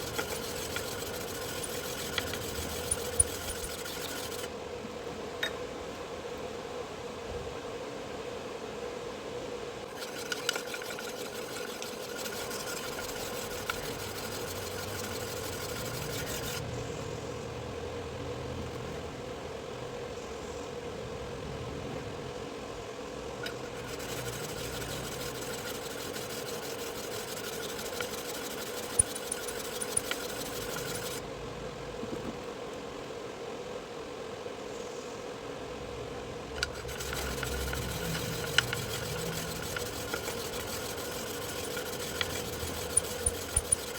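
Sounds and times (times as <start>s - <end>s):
sharpening machine humming: 0.0s - 4.5s, 9.9s - 16.6s, 23.4s - 31.2s, 36.6s - 43.9s
metal grinding hiss: 36.6s - 43.9s.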